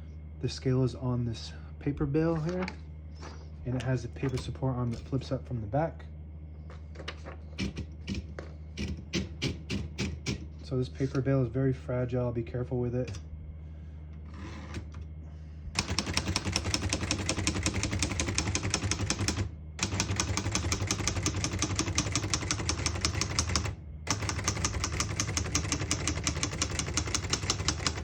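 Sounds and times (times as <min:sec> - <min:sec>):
typewriter key strikes: 0:15.8 - 0:28.0.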